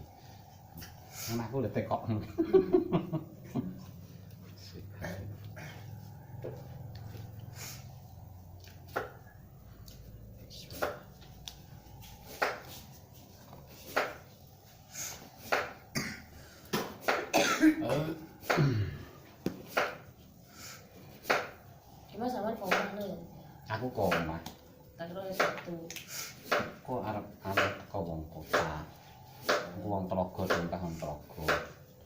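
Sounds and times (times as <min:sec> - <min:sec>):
person coughing: 0:15.9 - 0:16.3, 0:17.3 - 0:19.1
throat clearing: 0:15.9 - 0:16.3, 0:17.3 - 0:19.2.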